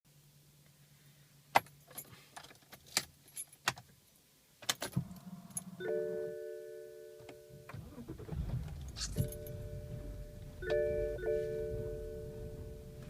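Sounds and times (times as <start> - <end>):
faint low hum: 3.2 - 13.0
keys jangling: 8.8 - 9.6.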